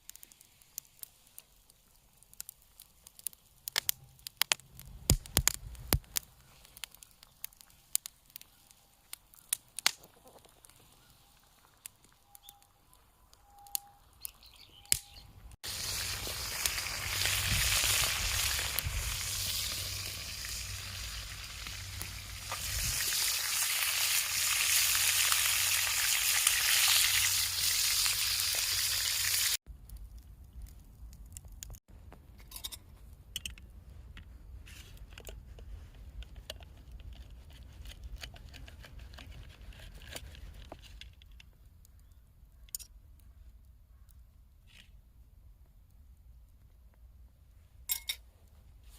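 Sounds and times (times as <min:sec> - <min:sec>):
food sizzling in a hot pan: 0:15.6 - 0:29.6.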